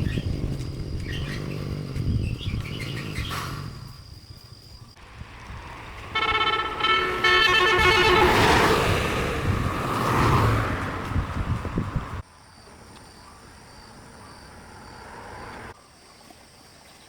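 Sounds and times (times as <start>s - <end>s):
loud vehicle rushing past: 4.9s - 12.2s, 13.5s - 15.8s
vehicle horn: 5.9s - 9.8s.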